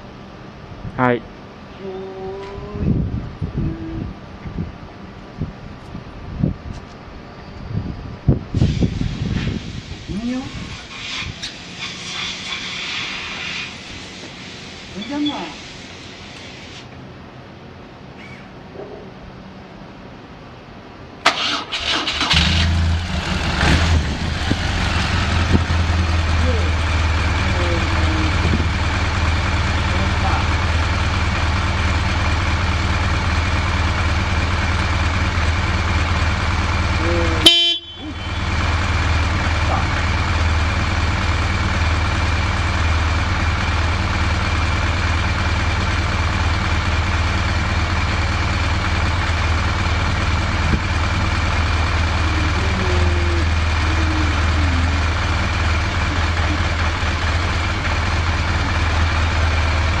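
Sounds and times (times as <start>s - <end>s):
motorcycle engine idling: 24.1s - 60.0s
horn beep: 37.4s - 38.5s.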